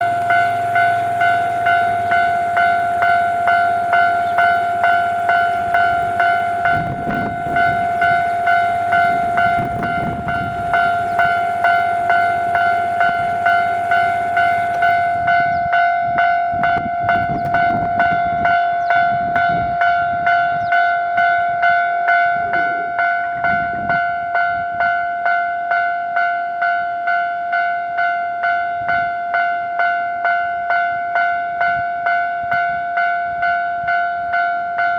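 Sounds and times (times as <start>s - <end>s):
low rumbling: 0.0s - 20.7s
level-crossing warning bell: 0.0s - 34.9s.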